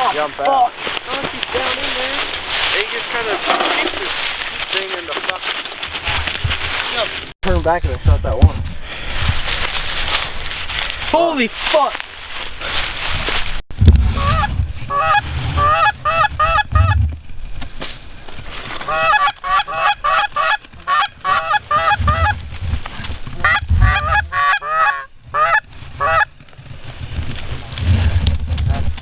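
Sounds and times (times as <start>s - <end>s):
low rumbling thumps: 6.0s - 11.0s, 12.9s - 18.5s, 21.6s - 24.4s
geese honking: 14.2s - 17.0s, 18.8s - 22.4s, 23.3s - 26.4s.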